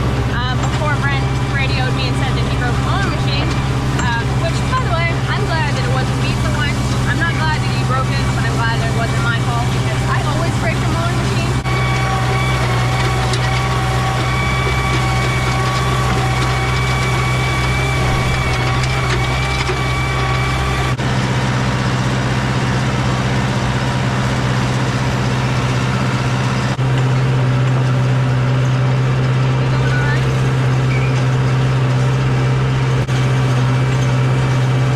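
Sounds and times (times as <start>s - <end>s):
tractor engine running: 0.0s - 34.9s.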